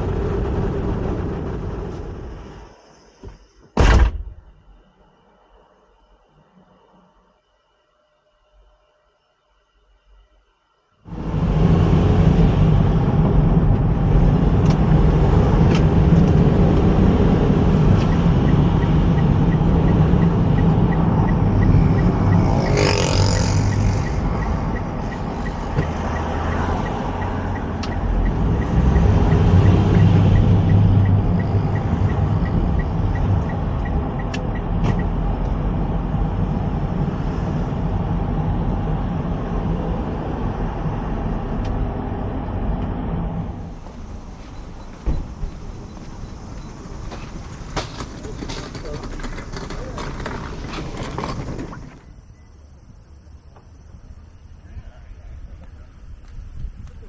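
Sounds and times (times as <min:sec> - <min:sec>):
motor vehicle running: 0:00.0 - 0:02.8, 0:11.1 - 0:52.2.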